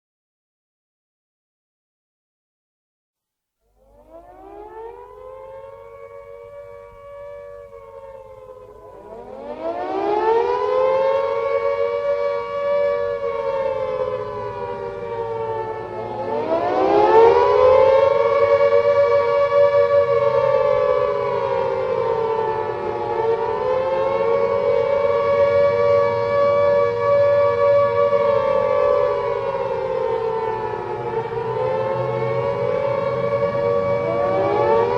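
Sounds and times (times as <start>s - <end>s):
air-raid siren wailing: 3.8s - 34.9s.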